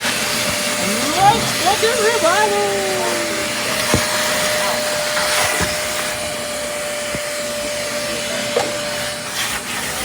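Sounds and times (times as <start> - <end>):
small electric motor whining: 0.3 - 5.8.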